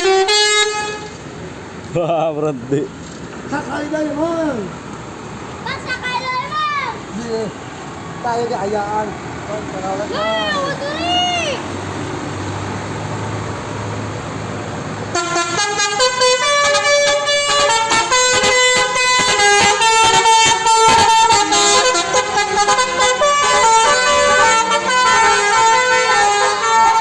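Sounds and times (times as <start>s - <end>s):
musical air horn melody: 0.0s - 1.2s, 15.1s - 27.0s.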